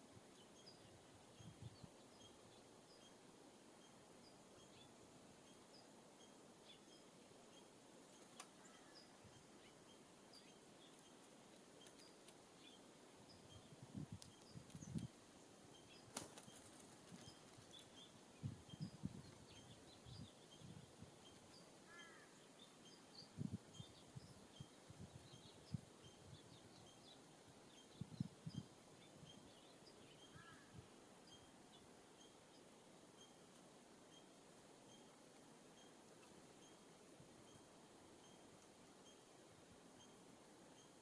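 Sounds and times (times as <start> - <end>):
faint high bird chirps: 15.7 - 34.3
bird wings fluttering: 16.0 - 17.9.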